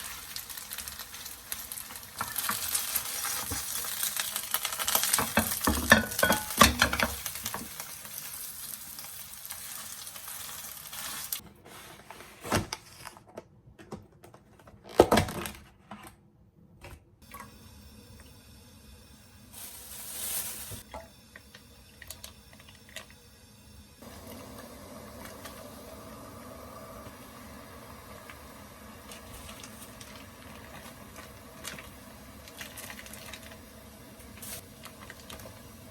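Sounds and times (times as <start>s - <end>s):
food sizzling in a frying pan: 0.0s - 11.4s, 19.5s - 20.9s, 24.0s - 35.9s
utensils knocking on pan: 5.1s - 7.7s
dishes clinking: 5.3s - 7.2s.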